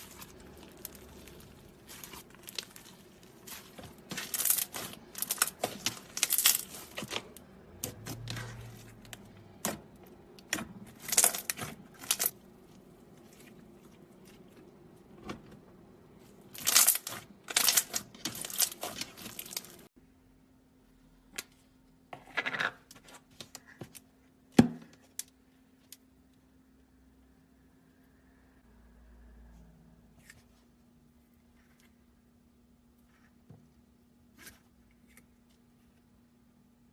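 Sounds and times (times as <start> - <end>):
slime crackling and popping: 0.0 - 8.8, 10.4 - 12.4, 16.6 - 19.9.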